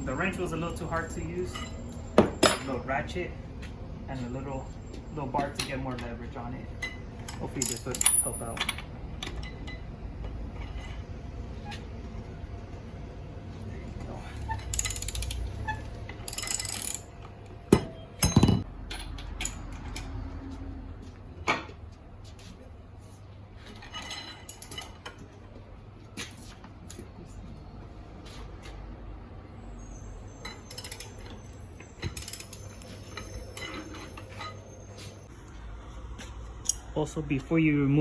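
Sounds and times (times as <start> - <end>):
metal tools knocking: 17.7 - 19.9.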